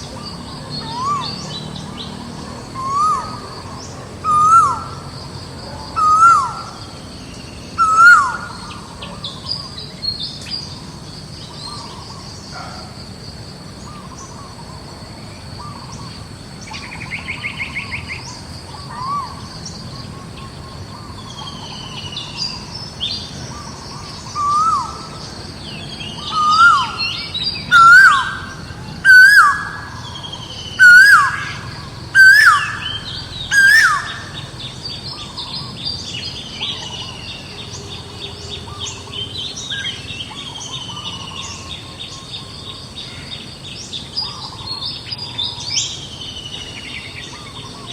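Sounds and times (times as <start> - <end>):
bird chirps and trill: 0.0 - 13.0, 15.5 - 47.9
high insect drone: 0.0 - 47.9
bird rising and dropping calls: 0.8 - 1.8, 2.7 - 3.6, 4.2 - 5.1, 6.0 - 7.0, 7.7 - 9.0, 23.8 - 25.3, 26.0 - 35.8.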